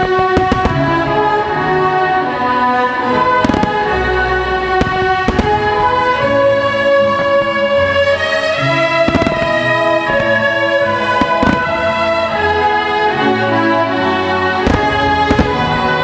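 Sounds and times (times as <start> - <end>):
orchestral music: 0.0 - 16.0
firework shells bursting: 9.1 - 12.0.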